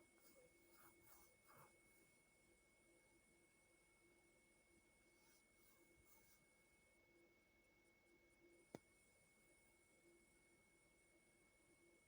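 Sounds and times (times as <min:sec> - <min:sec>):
faint electrical hum and hiss: 0:00.0 - 0:12.0.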